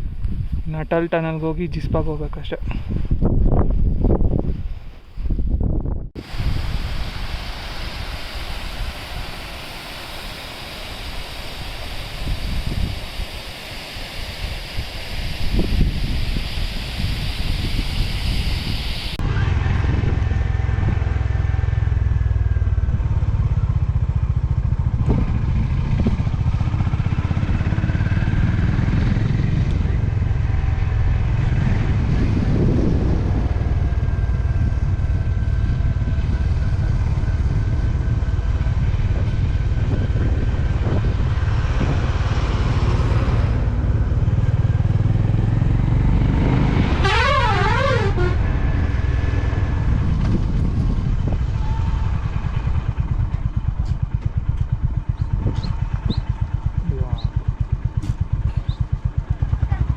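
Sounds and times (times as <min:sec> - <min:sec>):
motorcycle engine droning: 0:19.2 - 0:59.9
warbling vehicle horn: 0:46.9 - 0:49.0.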